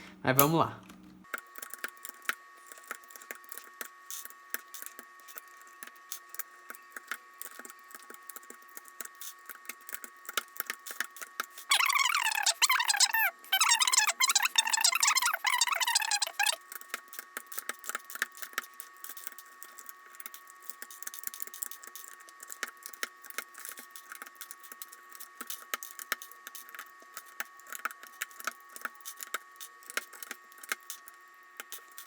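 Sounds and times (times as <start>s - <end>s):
keyboard keycaps clicking: 11.7s - 16.6s.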